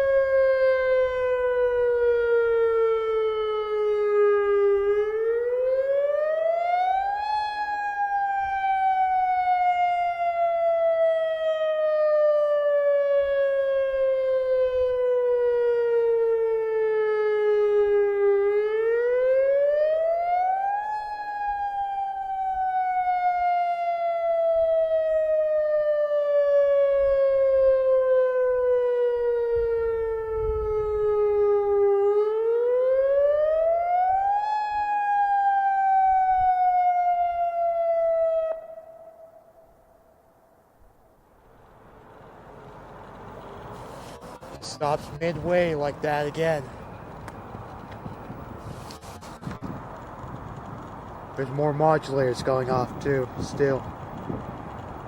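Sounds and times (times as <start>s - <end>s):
electronic warning siren wailing: 0.0s - 40.4s.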